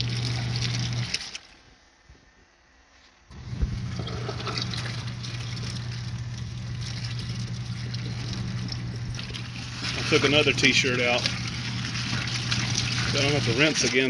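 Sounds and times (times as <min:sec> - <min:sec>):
washing machine motor humming: 0:00.0 - 0:01.4, 0:03.3 - 0:14.0
tub churning water: 0:00.0 - 0:02.0, 0:03.3 - 0:14.0.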